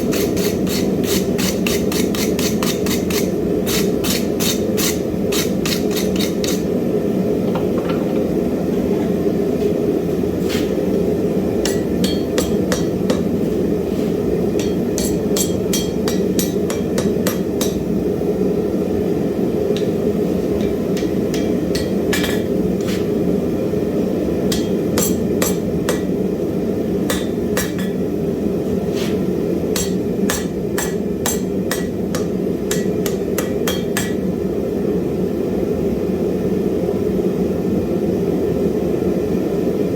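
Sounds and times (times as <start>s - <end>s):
hammer striking iron on anvil: 0.0s - 6.6s, 11.6s - 13.4s, 14.6s - 17.9s, 19.8s - 23.1s, 24.5s - 26.2s, 27.1s - 28.1s, 29.7s - 34.3s.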